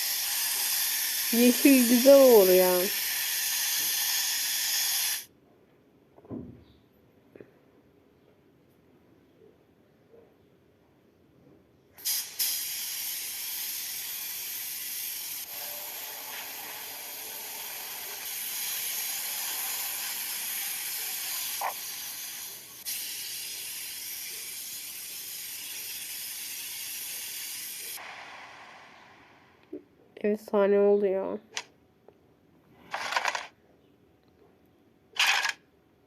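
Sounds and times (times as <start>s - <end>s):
spray paint hissing: 0.0s - 5.3s, 12.0s - 28.1s.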